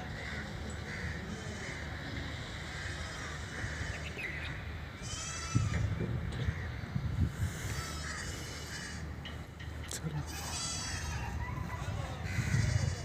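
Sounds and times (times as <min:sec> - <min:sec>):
steady low rumble: 0:00.0 - 0:13.0
animal bleating: 0:05.0 - 0:05.9, 0:07.6 - 0:09.0, 0:10.2 - 0:13.0.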